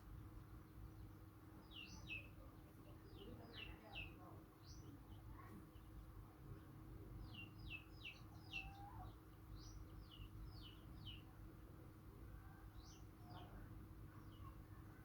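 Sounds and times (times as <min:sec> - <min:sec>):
small birds chirping: 0:00.0 - 0:15.0.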